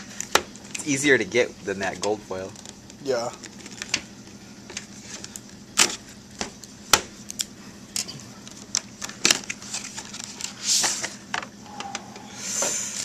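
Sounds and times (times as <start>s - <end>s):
card pack rustling: 8.5s - 11.2s.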